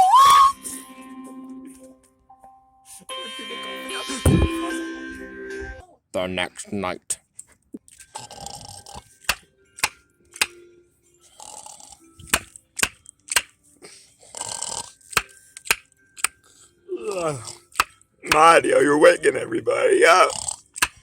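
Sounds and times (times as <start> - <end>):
breathy snore-like sound: 8.1 - 9.1, 11.2 - 12.3, 14.0 - 15.4, 20.0 - 21.0
sharp snapping clicks: 9.3 - 10.6, 12.3 - 13.5, 15.1 - 16.4, 17.7 - 18.4, 20.8 - 21.0.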